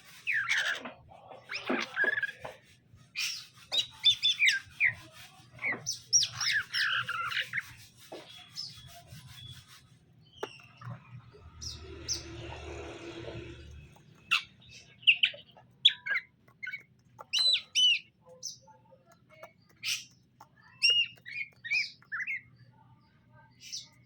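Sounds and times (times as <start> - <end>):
scratchy rustling: 1.4 - 13.9.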